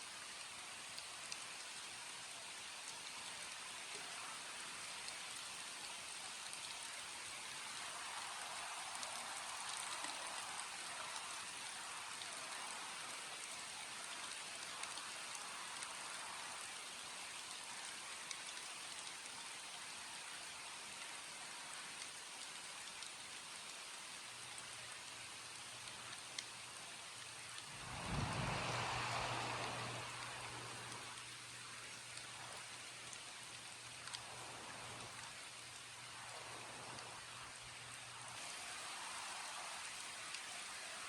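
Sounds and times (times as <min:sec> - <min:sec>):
steady rain falling: 0:00.0 - 0:41.0
individual raindrop ticks: 0:00.2 - 0:41.0.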